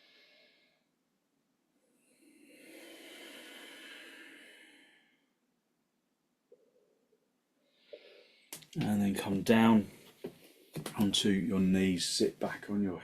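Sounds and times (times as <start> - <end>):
person breathing deeply: 0.0 - 0.9, 1.8 - 5.4, 7.6 - 8.6.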